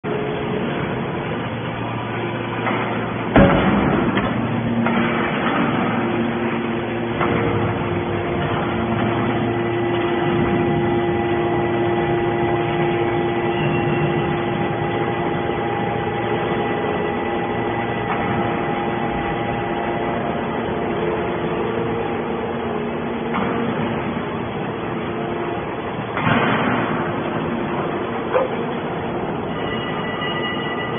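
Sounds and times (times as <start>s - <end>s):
hydraulic baler machine hum: 0.1s - 30.9s.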